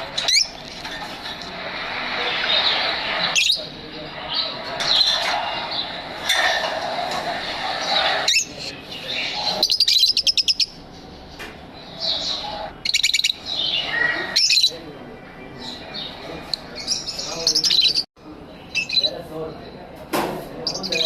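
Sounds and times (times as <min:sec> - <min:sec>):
lovebirds chirping: 0:07.4 - 0:19.2.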